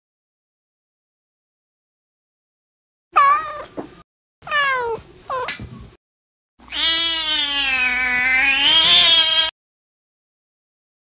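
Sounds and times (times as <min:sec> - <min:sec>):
cat meowing: 0:04.5 - 0:05.5, 0:06.7 - 0:09.5.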